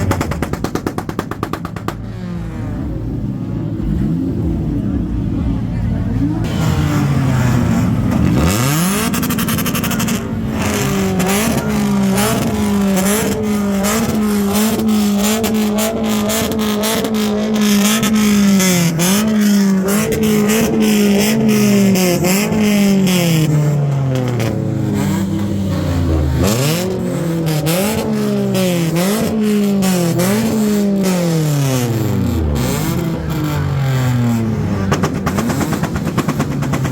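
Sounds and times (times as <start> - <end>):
exhaust pops and bangs: 0.0 - 3.0, 34.2 - 36.9
car engine revving: 0.0 - 36.9.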